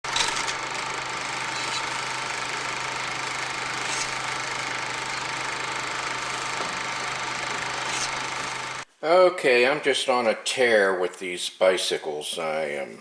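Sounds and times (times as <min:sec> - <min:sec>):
motor humming: 0:00.0 - 0:08.8.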